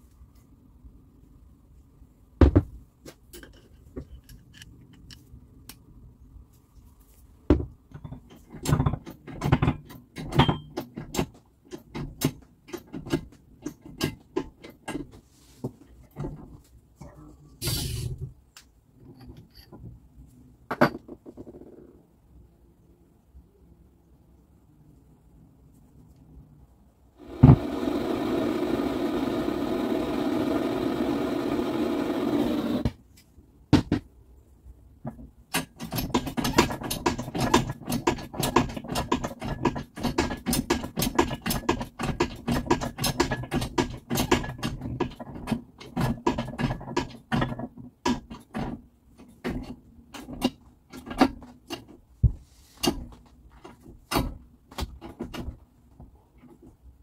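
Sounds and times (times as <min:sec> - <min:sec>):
rapid irregular clicks and knocks: 0:07.6 - 0:16.8, 0:35.0 - 0:57.0
machine running steadily: 0:27.2 - 0:32.9.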